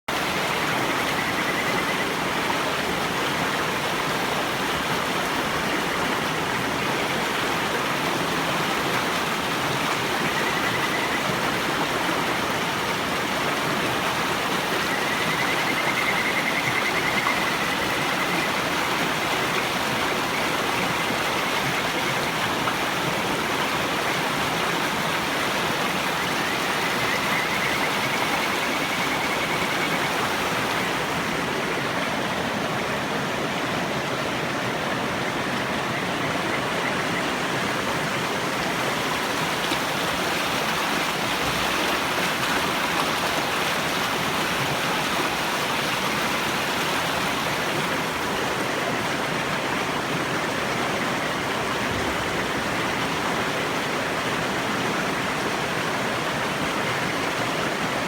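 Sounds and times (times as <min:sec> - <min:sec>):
river water rushing: 0:00.1 - 0:58.0
frogs trilling: 0:00.2 - 0:03.6, 0:09.4 - 0:32.9, 0:33.9 - 0:48.4.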